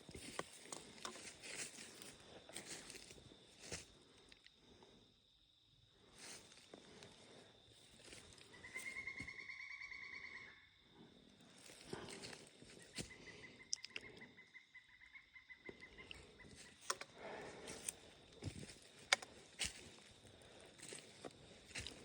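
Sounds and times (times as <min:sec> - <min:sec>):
footsteps crunching dry leaves: 0:00.0 - 0:03.8, 0:17.5 - 0:22.0.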